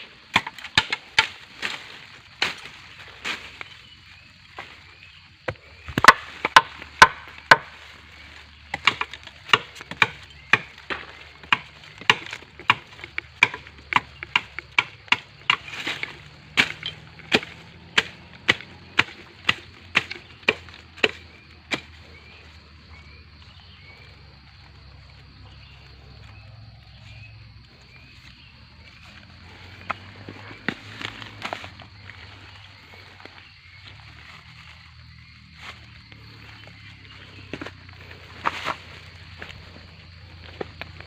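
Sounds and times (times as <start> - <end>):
blade chopping bamboo: 0.3 - 3.5, 5.5 - 22.3, 29.2 - 32.2.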